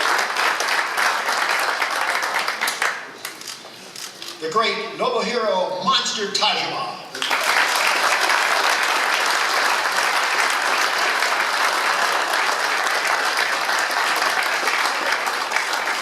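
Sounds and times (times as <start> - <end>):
audience applauding: 0.0 - 3.5, 7.2 - 16.0.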